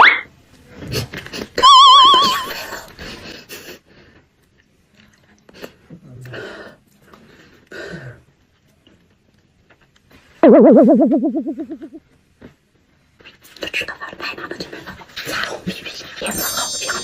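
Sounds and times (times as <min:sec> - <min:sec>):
warbling comic sound effect: 0:10.4 - 0:12.0.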